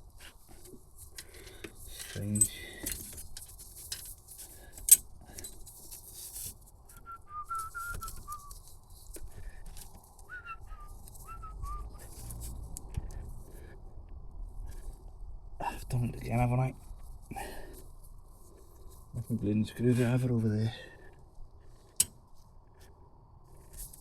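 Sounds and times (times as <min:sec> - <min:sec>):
metal tools clinking: 0:01.9 - 0:04.1
person whistling: 0:06.9 - 0:08.5, 0:10.3 - 0:12.0.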